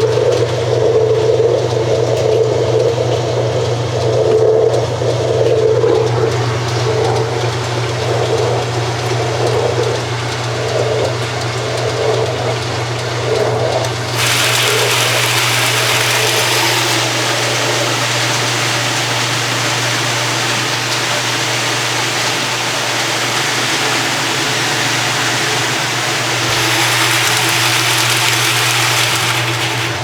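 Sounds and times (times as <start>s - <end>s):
washing machine motor hum: 0.0s - 30.0s
rush of water: 14.1s - 30.0s.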